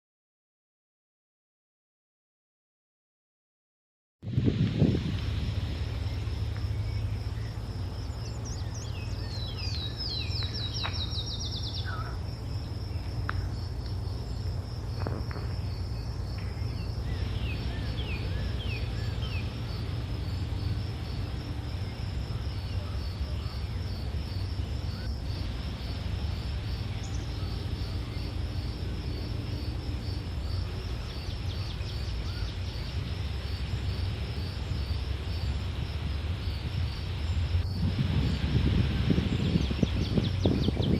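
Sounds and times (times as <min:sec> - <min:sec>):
insects buzzing: 0:04.3 - 0:40.9
low steady rumble: 0:04.3 - 0:40.9
bird chirping: 0:05.9 - 0:13.6, 0:15.0 - 0:20.0, 0:26.7 - 0:29.2, 0:30.4 - 0:33.0, 0:39.0 - 0:40.9.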